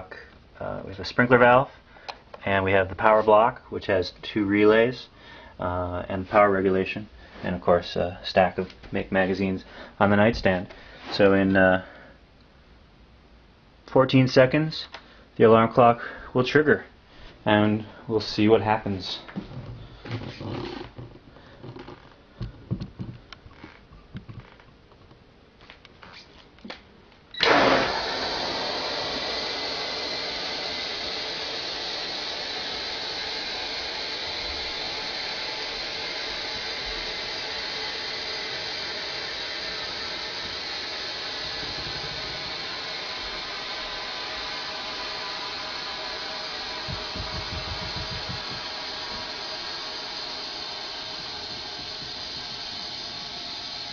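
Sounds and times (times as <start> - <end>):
faint clicks and knocks: 19.4 - 27.2
compressed air hissing: 27.4 - 53.9.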